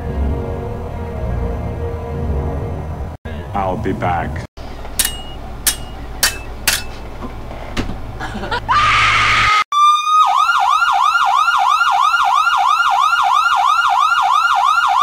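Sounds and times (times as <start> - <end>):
siren in fast yelp pattern: 9.4 - 15.0.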